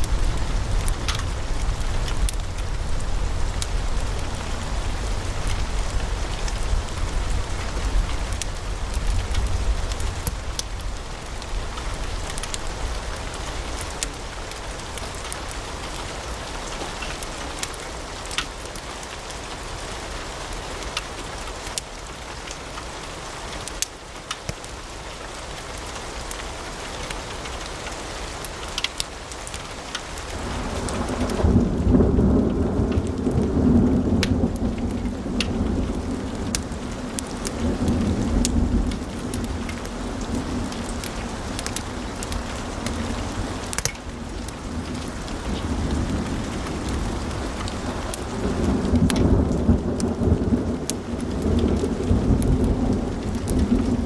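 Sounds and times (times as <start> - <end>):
low rumble: 0.0 - 13.8
wood fire crackling: 0.0 - 54.0.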